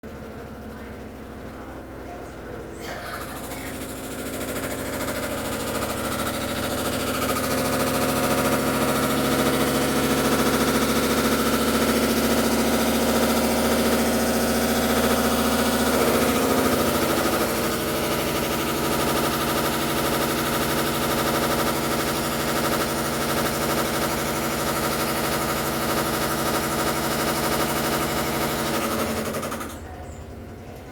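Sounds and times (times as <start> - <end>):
washing machine humming: 0.0 - 30.9.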